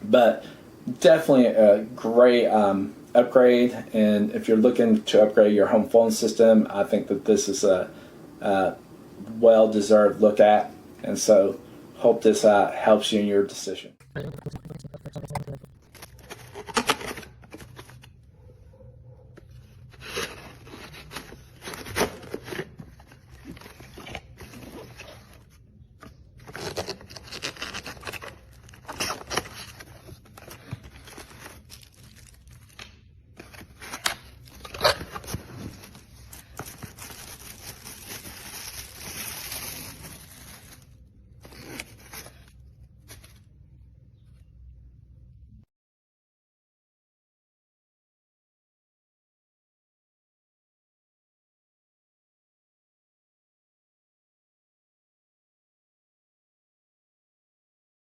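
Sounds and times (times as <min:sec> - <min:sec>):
packaging rustling and crinkling: 0:14.7 - 0:18.1, 0:19.9 - 0:25.6, 0:26.4 - 0:43.5.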